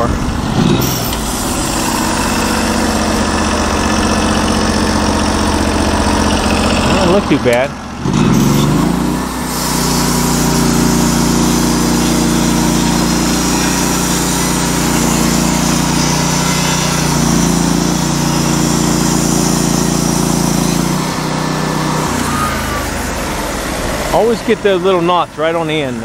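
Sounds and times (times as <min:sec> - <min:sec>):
sawmill engine running: 0:00.0 - 0:26.0
band blade cutting log: 0:08.1 - 0:23.8.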